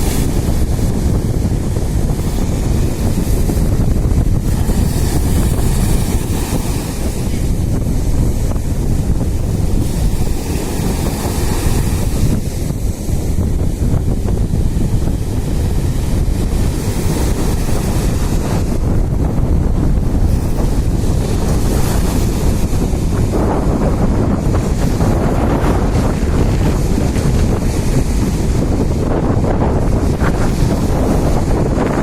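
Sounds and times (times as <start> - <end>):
sea surf: 0.0 - 32.0
wind buffeting microphone: 0.0 - 32.0.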